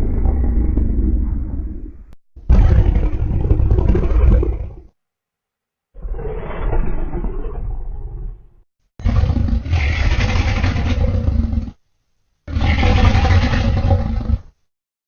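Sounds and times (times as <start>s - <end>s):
monster roars: 6.0s - 11.8s, 12.5s - 14.6s.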